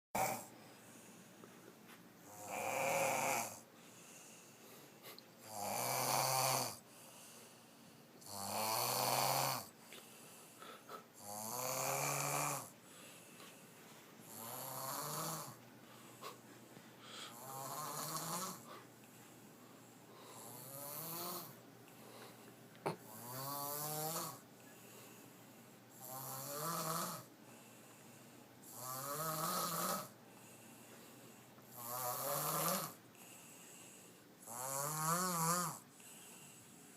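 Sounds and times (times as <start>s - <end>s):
person snoring: 0.2s - 0.5s, 2.2s - 4.4s, 5.4s - 7.4s, 8.2s - 9.7s, 10.5s - 12.8s, 14.2s - 15.6s, 17.1s - 18.8s, 20.2s - 21.6s, 22.9s - 24.4s, 25.9s - 27.3s, 28.6s - 30.6s, 31.7s - 36.6s.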